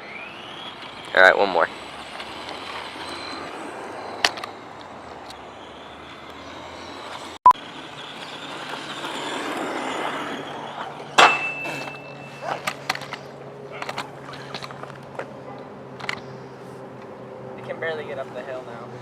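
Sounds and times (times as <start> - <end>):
radio-controlled truck motor hissing: 0.0 - 11.1.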